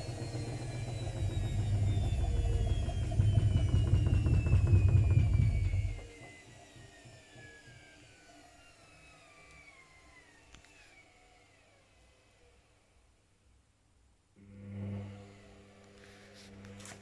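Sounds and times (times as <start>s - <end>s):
washing machine drum rumble and rattle: 0.0s - 7.3s
washing machine motor whine: 0.0s - 12.7s, 14.4s - 17.0s.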